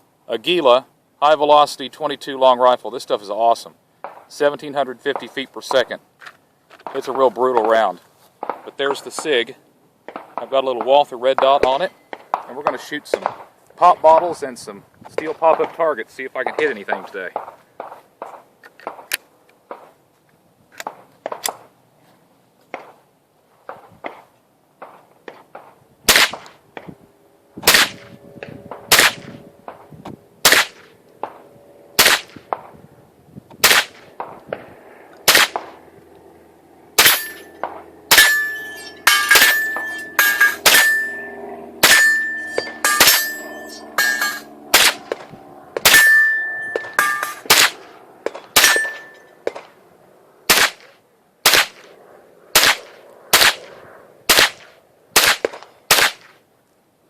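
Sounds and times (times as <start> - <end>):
rifle shots: 24.8 - 26.9, 27.6 - 28.1, 28.7 - 32.8, 33.6 - 34.6, 35.2 - 35.8, 37.0 - 49.8, 50.5 - 51.9, 52.5 - 56.4
metallic ring from steel targets: 37.0 - 45.2, 45.8 - 47.9, 48.5 - 49.4.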